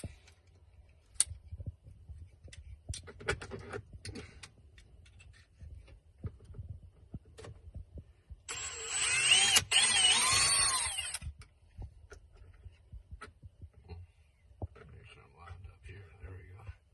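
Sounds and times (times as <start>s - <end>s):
drill running: 8.5s - 11.2s
hammer drill handling clicks: 8.5s - 11.2s.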